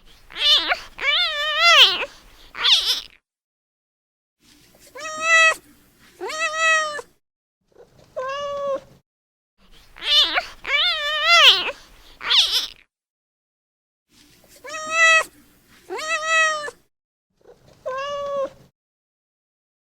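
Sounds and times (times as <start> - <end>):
kitten meowing: 0.3 - 3.1, 5.0 - 5.6, 6.2 - 7.1, 10.0 - 12.8, 14.6 - 15.3, 15.9 - 16.8, 17.8 - 18.6.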